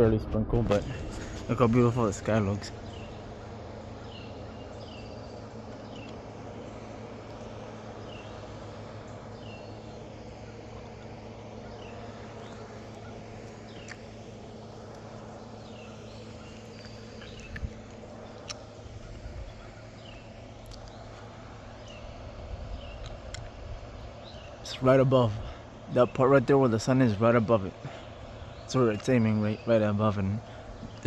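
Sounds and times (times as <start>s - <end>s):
low rumble: 0.0s - 7.6s
bird chirps: 0.8s - 7.0s, 7.9s - 23.2s.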